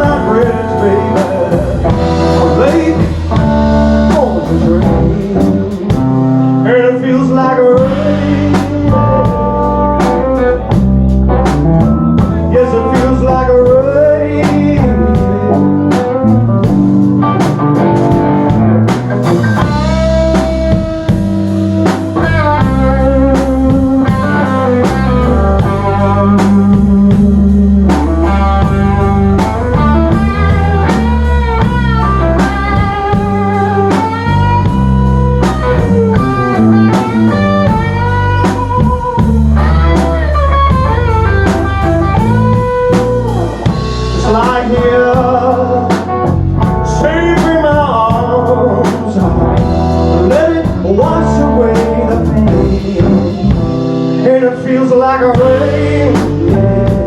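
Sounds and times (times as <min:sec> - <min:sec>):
drums: 0:00.0 - 0:57.0
low accompaniment: 0:00.0 - 0:57.0
lead guitar solo: 0:14.9 - 0:44.4.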